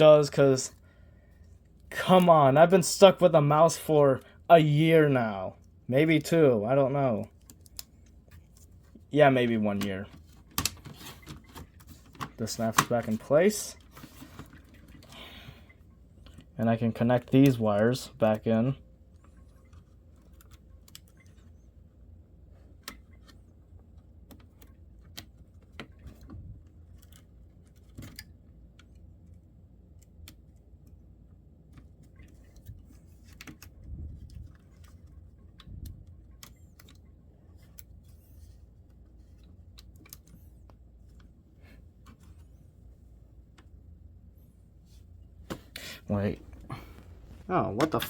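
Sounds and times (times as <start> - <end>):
low background hum: 0.0 - 48.0
small parts clicking and tapping: 22.8 - 31.0, 31.6 - 41.3.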